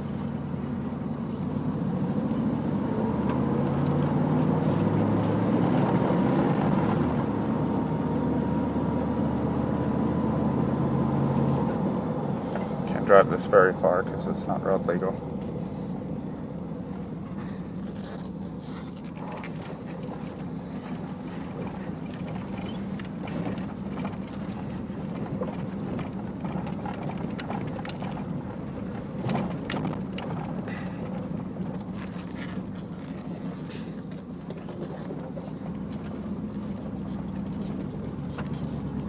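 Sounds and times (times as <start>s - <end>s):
truck engine droning: 0.0s - 39.0s
light clicks and rattles: 17.2s - 39.0s.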